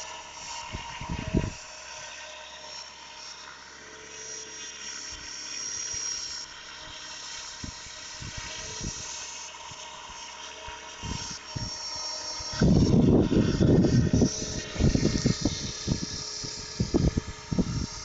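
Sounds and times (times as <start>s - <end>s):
model helicopter whine: 0.0s - 18.0s
wind buffeting microphone: 0.7s - 1.6s, 12.5s - 18.0s.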